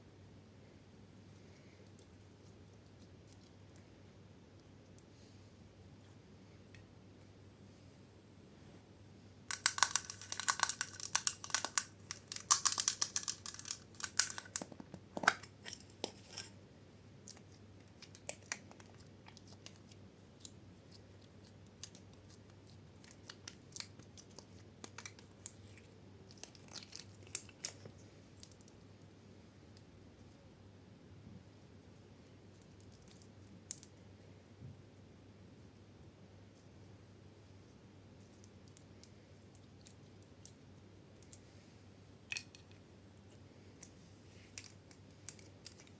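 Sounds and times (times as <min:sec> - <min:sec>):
slime crackling and popping: 0:09.5 - 0:14.6.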